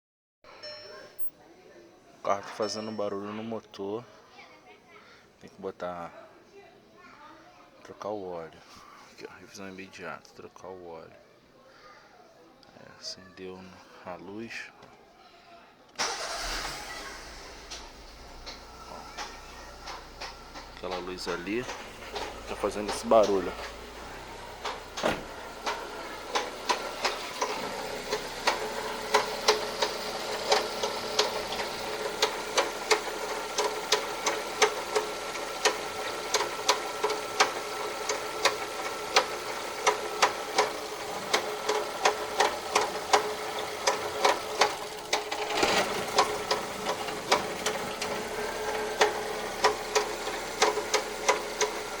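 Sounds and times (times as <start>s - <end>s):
car engine running: 16.0s - 52.0s
engine knocking: 16.1s - 52.0s.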